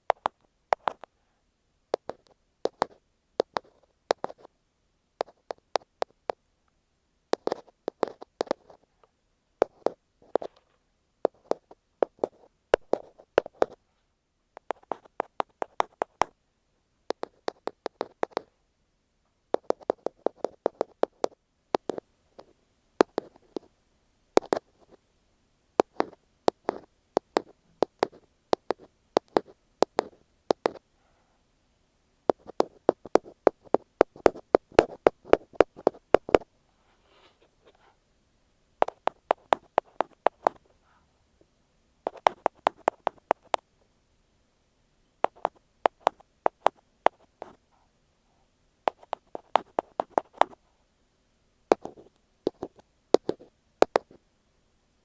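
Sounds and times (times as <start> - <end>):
tapping on earphone microphone: 0.0 - 1.1, 1.9 - 4.5, 7.3 - 8.8, 9.6 - 13.8, 14.6 - 16.4, 17.1 - 18.5, 19.2 - 23.7, 24.4 - 25.0, 25.8 - 30.8, 32.3 - 36.5, 38.8 - 40.7, 42.0 - 43.7, 45.2 - 47.9, 48.9 - 50.6, 51.7 - 54.2.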